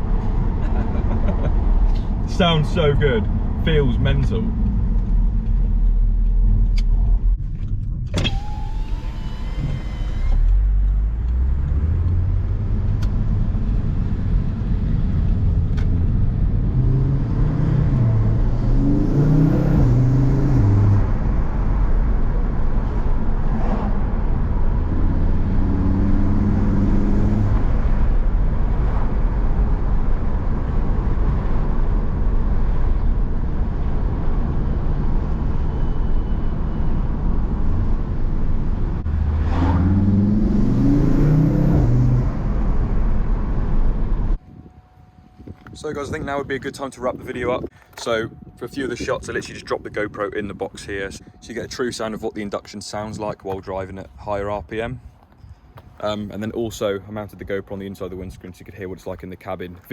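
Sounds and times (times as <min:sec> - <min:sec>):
car engine accelerating: 0:00.0 - 0:44.4
road noise: 0:00.0 - 0:59.9.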